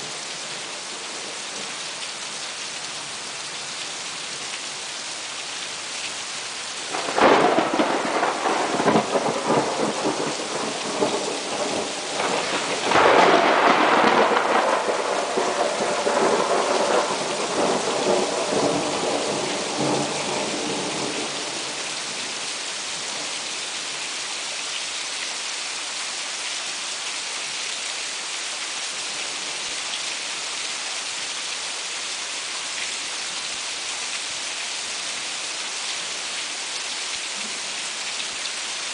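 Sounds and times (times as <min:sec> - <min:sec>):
heavy rain: 0:00.0 - 0:38.9
thunder claps: 0:06.9 - 0:21.4.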